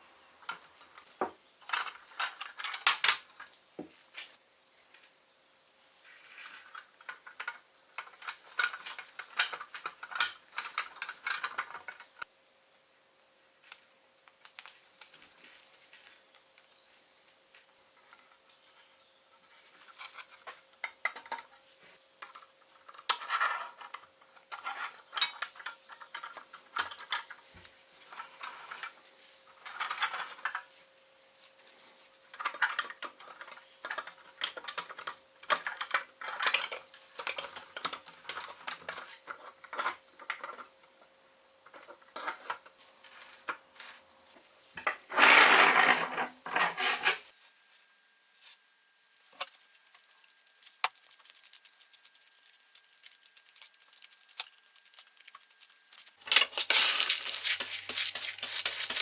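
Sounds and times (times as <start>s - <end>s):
small steel parts clinking: 49.0s - 57.7s.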